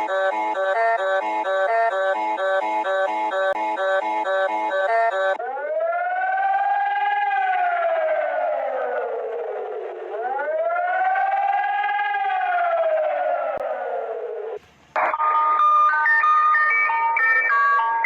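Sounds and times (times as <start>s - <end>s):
stepped electronic tones: 0.0s - 5.4s
civil defense siren wailing: 0.0s - 18.0s.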